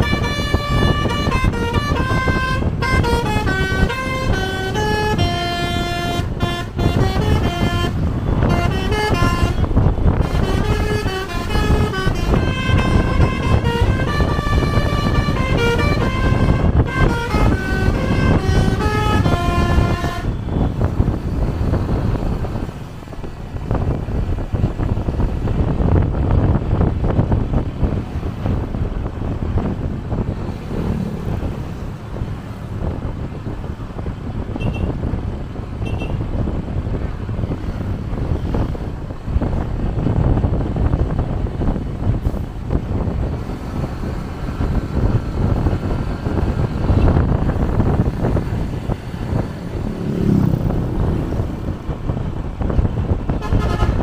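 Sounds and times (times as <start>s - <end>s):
multi-note bus horn melody: 0.0s - 21.0s, 34.5s - 35.1s, 35.8s - 36.2s, 53.3s - 54.0s
engine and road rumble: 0.0s - 54.0s.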